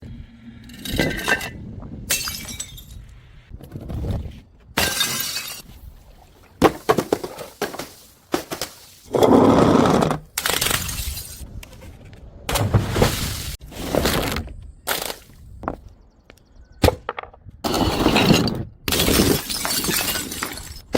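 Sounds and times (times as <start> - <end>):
glass bottles smashing: 0.9 - 3.0, 4.8 - 5.7, 17.8 - 20.9.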